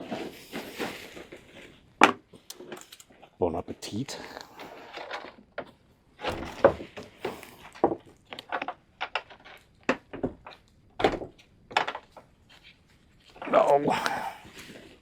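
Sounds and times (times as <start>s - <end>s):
objects knocking and clunking: 0.0s - 3.4s, 4.2s - 12.4s.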